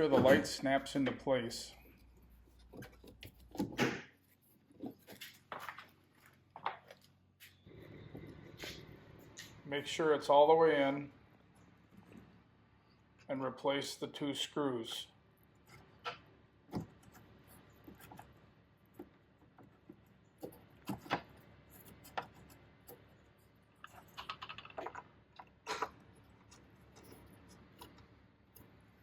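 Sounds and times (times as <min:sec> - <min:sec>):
small plastic parts clicking: 0:23.8 - 0:28.8.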